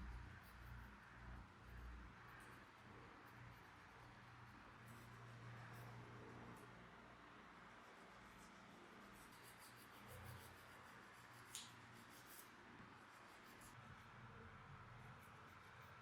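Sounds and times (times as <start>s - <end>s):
faint scratching and rubbing: 0.0s - 6.9s, 7.5s - 16.0s
scratchy ticks: 9.2s - 12.5s.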